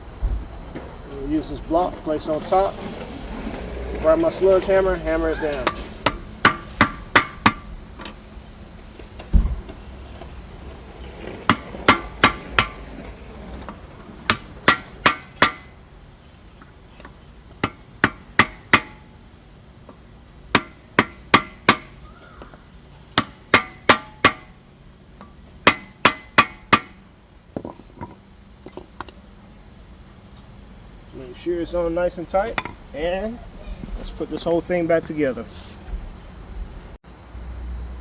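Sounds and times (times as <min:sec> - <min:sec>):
sledgehammer striking wood block: 0:05.4 - 0:07.7, 0:11.4 - 0:13.0, 0:14.3 - 0:15.8, 0:17.6 - 0:19.1, 0:20.6 - 0:22.0, 0:23.1 - 0:24.6, 0:25.2 - 0:27.0.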